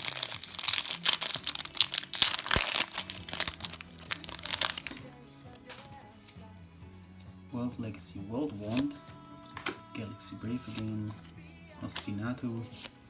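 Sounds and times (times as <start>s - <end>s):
foil wrapper crinkling and tearing: 0.0s - 5.1s.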